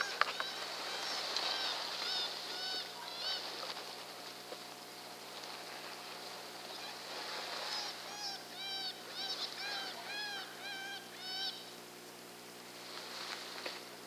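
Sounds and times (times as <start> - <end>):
distant coyotes yipping: 0.0 - 3.7, 6.7 - 11.8.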